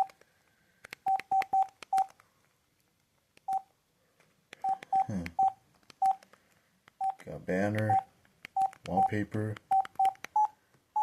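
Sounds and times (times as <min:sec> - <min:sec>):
phone keypad beeps: 0:01.0 - 0:02.2, 0:03.5 - 0:03.7, 0:04.6 - 0:06.2, 0:07.0 - 0:07.2, 0:07.9 - 0:11.0.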